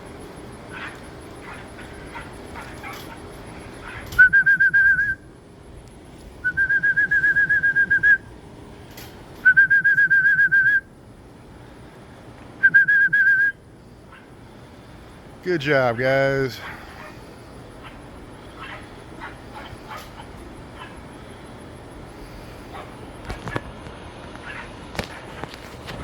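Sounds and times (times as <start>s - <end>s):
trilling whistle: 4.1s - 5.3s, 6.4s - 8.3s, 9.4s - 10.9s, 12.6s - 13.6s.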